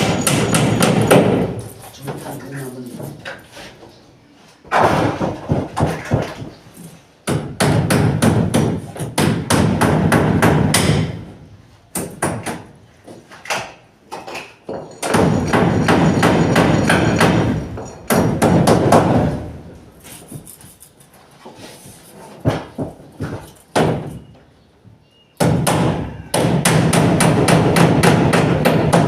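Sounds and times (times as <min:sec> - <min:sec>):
hammering nails into plywood: 0:00.0 - 0:01.6, 0:04.7 - 0:06.6, 0:07.2 - 0:11.3, 0:11.9 - 0:19.5, 0:22.4 - 0:24.2, 0:25.4 - 0:29.0.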